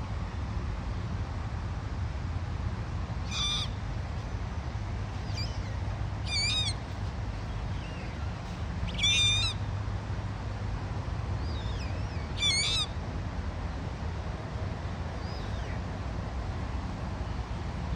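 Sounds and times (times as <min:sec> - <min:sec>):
bird chick squeaky calls: 0:03.3 - 0:03.8, 0:05.2 - 0:06.8, 0:08.9 - 0:09.6, 0:11.4 - 0:13.0.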